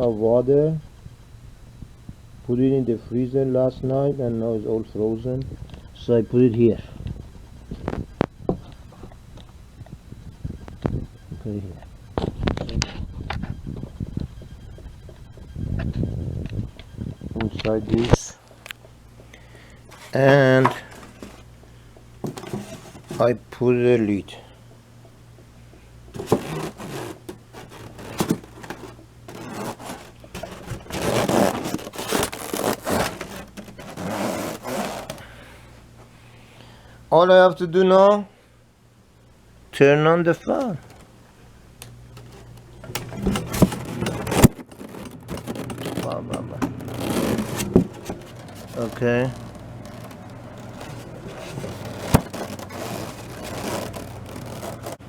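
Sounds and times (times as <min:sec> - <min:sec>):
small electric fan humming: 0:00.0 - 0:55.0
foam scraping on foam: 0:22.3 - 0:23.4, 0:26.2 - 0:35.3, 0:43.5 - 0:55.0.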